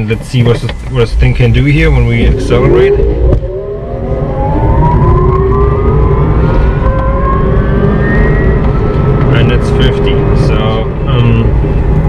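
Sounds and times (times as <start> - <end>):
road noise rumble: 0.0 - 12.0
electric motor whine rising: 2.2 - 10.5.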